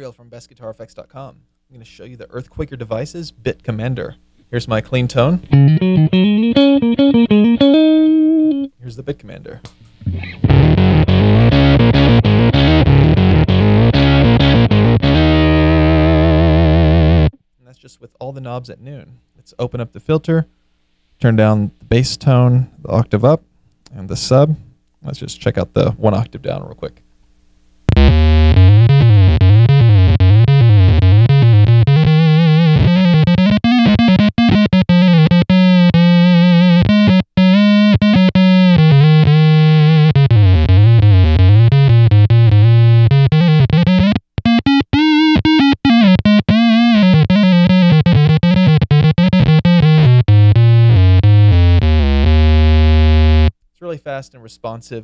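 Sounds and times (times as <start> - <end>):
synth-like electric guitar lead: 5.5 - 8.7, 10.1 - 17.4, 27.9 - 53.5.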